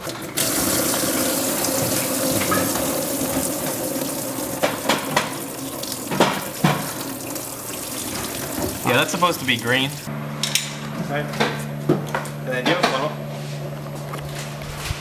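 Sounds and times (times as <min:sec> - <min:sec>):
liquid pouring into a pan: 0:00.2 - 0:09.2.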